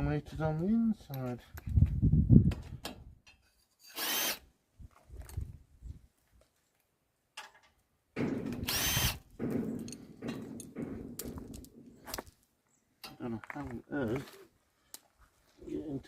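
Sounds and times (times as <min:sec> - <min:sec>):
knocks and metal rattles: 0:07.4 - 0:12.3.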